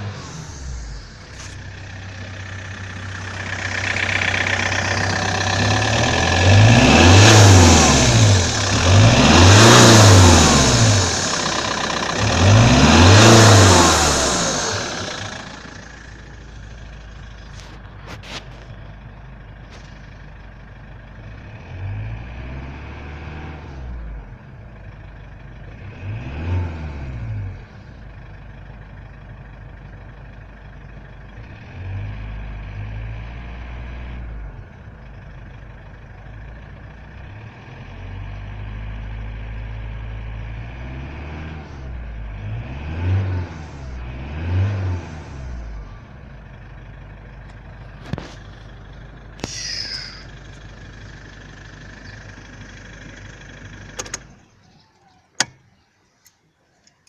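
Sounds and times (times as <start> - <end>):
diesel engine revving: 0.0 - 54.8
hiss from leaking hose: 49.4 - 50.3.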